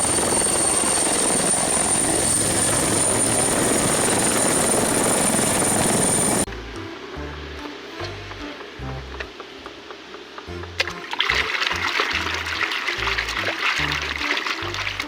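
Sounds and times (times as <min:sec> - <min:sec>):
helicopter rotor chop: 0:00.0 - 0:06.5
turbine whine: 0:00.0 - 0:10.5.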